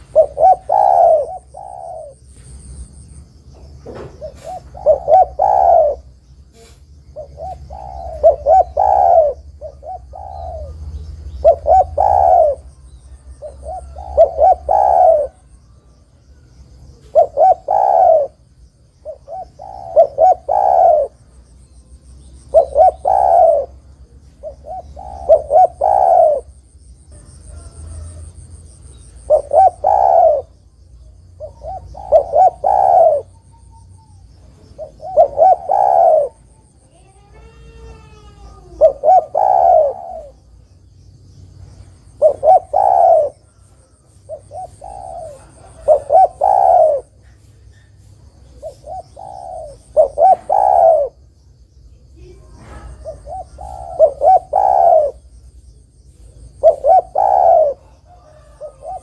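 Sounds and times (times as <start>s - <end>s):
dove cooing: 0.0s - 2.8s, 3.6s - 40.6s, 42.0s - 51.3s, 52.1s - 55.3s, 56.1s - 59.0s.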